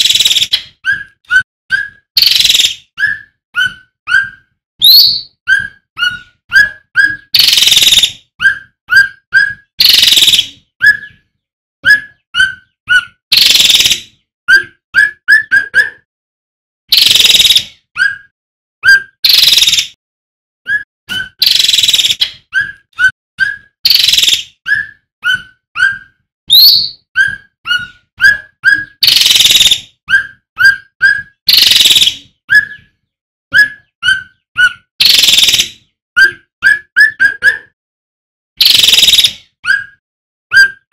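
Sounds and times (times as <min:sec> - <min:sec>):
songbird calling: 0:00.0 - 0:11.2, 0:25.8 - 0:32.9.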